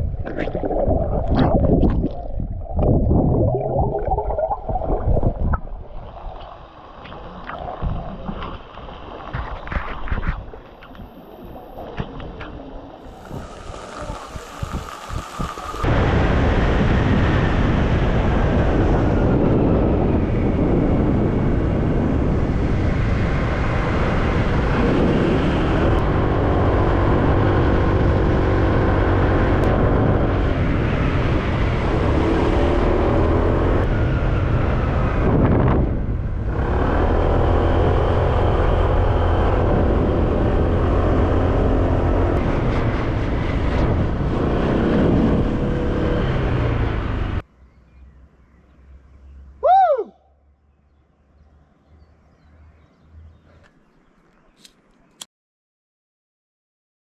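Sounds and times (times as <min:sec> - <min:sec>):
vehicle engine rumbling: 0:00.0 - 0:16.9, 0:17.5 - 0:49.6.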